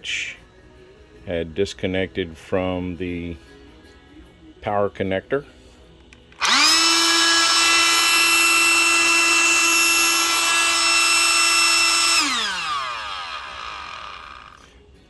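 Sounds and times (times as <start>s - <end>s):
electric air pump whining: 6.4s - 14.7s.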